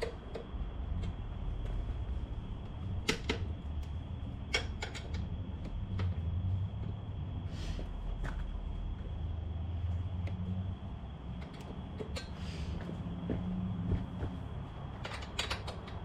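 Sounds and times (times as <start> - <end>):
steady low hum: 0.0 - 16.0
hand tools clicking on bolts: 11.4 - 12.4, 14.9 - 16.0.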